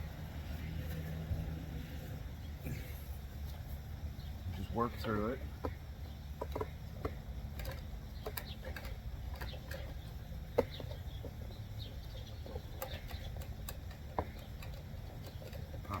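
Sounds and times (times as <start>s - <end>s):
steady low hum: 0.0s - 16.0s
plastic parts clicking: 6.4s - 11.4s, 12.2s - 16.0s.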